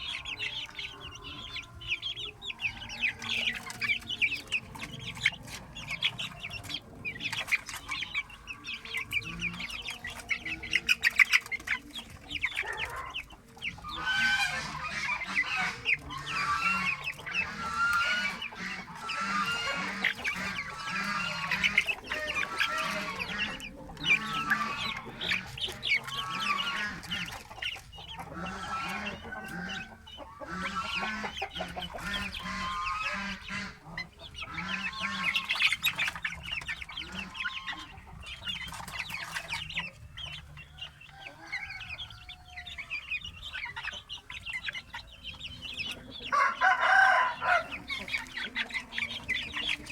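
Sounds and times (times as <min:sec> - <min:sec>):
chickens clucking: 0:00.0 - 0:49.9.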